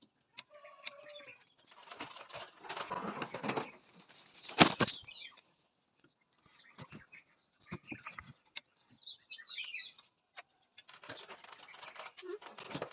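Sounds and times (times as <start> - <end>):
wings flapping and rustling: 1.9 - 5.1.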